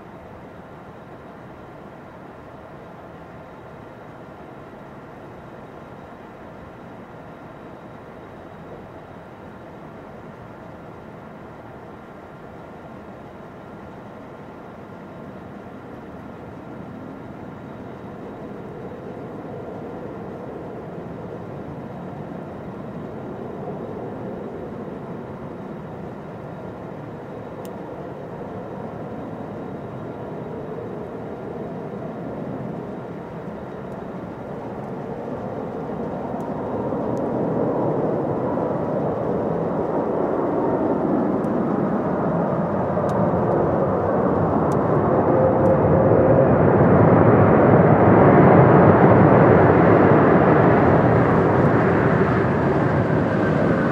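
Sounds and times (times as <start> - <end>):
jet engines roaring: 13.9 - 53.9.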